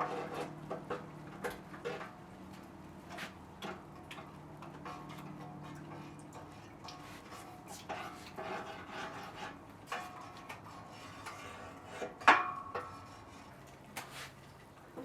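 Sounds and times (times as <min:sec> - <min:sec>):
objects rubbing and scraping: 0:07.0 - 0:12.2.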